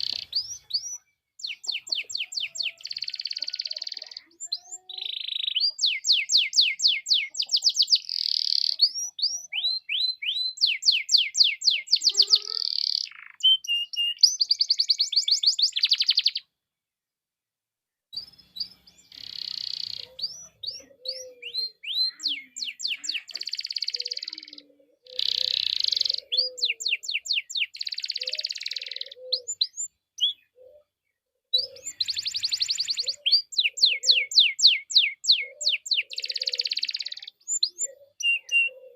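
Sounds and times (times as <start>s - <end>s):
canary singing: 0.0s - 16.6s, 18.1s - 38.9s.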